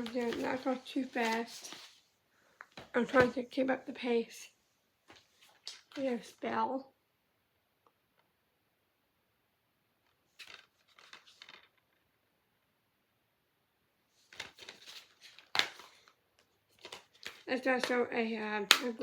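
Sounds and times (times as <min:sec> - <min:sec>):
plastic cases scraping and rustling: 0:00.0 - 0:02.0, 0:10.4 - 0:11.8, 0:14.2 - 0:16.1, 0:16.7 - 0:17.4.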